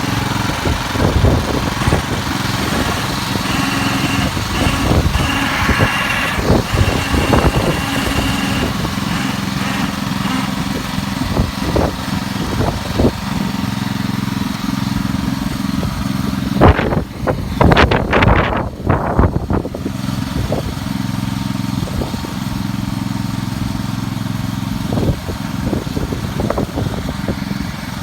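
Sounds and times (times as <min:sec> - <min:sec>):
knocks and rattles: 0:00.0 - 0:11.2
garden tractor engine running: 0:00.0 - 0:18.6, 0:19.4 - 0:28.0.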